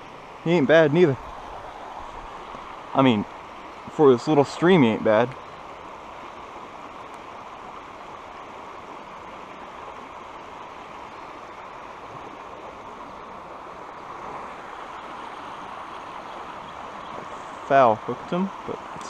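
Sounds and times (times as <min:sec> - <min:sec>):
river water flowing: 0:00.0 - 0:19.0.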